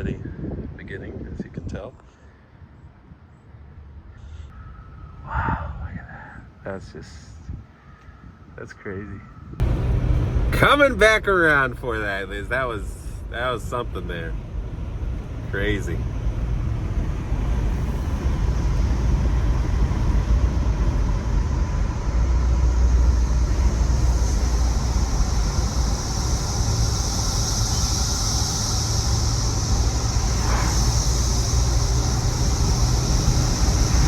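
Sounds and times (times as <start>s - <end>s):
cicadas droning: 2.3s - 6.7s, 9.2s - 34.0s
car tyres and engine rumble: 9.6s - 34.0s.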